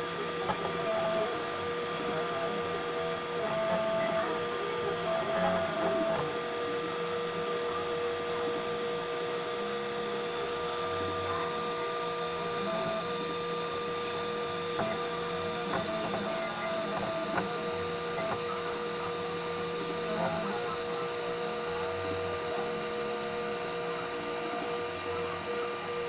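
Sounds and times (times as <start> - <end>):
stepper motors whining: 0.0 - 26.0.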